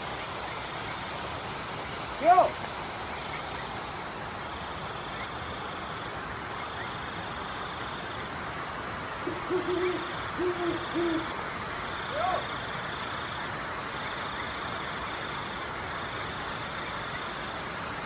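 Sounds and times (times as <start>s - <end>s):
steady background hiss: 0.0s - 18.0s
owl hooting: 9.2s - 12.5s.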